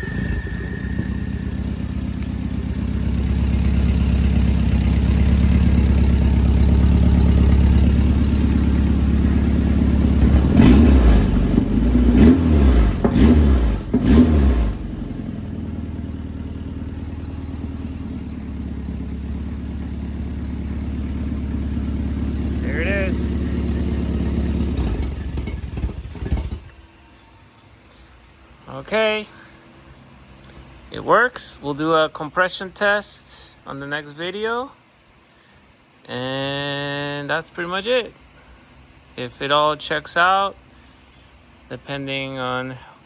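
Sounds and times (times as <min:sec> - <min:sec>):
car engine idling and revving: 0:00.0 - 0:27.4.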